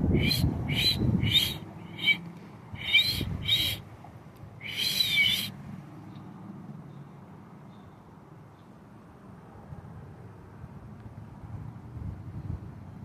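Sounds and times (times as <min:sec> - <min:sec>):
high-pitched chirping calls: 0:00.0 - 0:02.2, 0:02.8 - 0:03.8, 0:04.6 - 0:05.5
faint outdoor background: 0:00.0 - 0:13.0.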